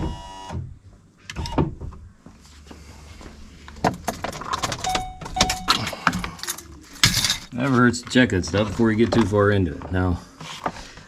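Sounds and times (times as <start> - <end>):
metallic clinks and rattles: 4.0 - 7.5.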